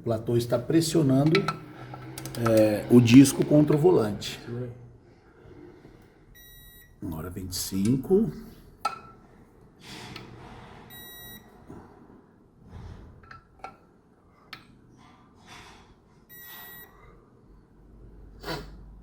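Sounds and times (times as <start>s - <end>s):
tool handling clicks: 1.2s - 2.7s.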